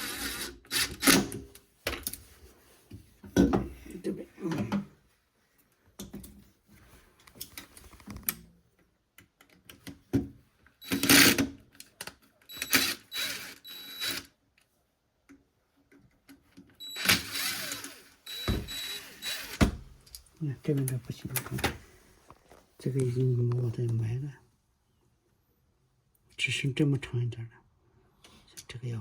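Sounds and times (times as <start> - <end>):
harsh mechanical bursts: 16.9 - 19.6.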